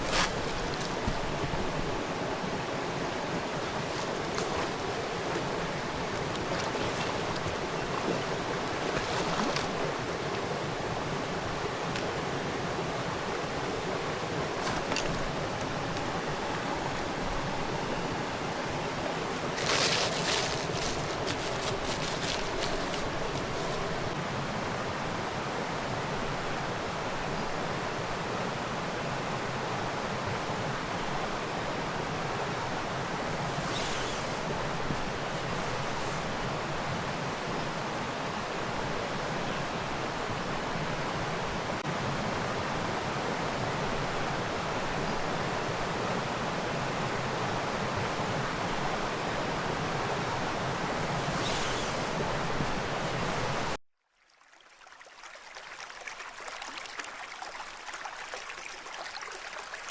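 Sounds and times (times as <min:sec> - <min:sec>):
river water rushing: 0:00.0 - 0:25.1, 0:39.7 - 0:53.8.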